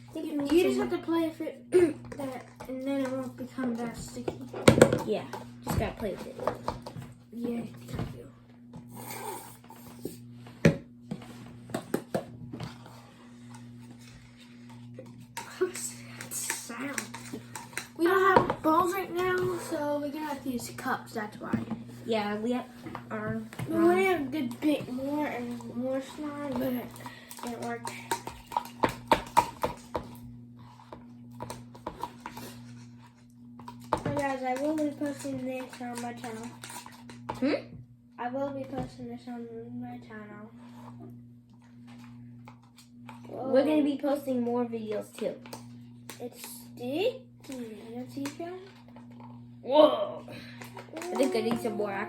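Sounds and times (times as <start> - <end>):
steady low hum: 0.0 - 52.0
cups clicking and knocking: 2.1 - 7.1, 14.7 - 20.6, 22.9 - 30.2, 33.6 - 37.4, 50.5 - 52.0.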